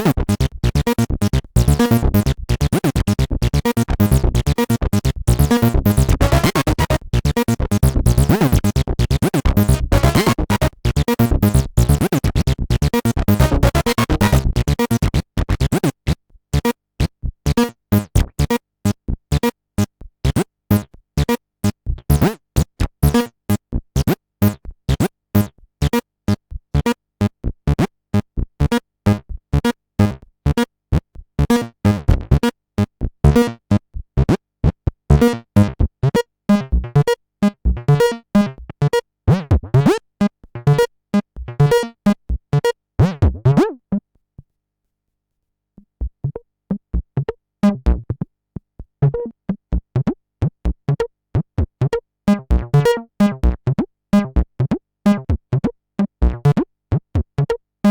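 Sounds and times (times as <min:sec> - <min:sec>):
acid bass synthesizer line: 0:00.0 - 0:18.6, 0:19.3 - 0:26.9, 0:33.2 - 0:33.4.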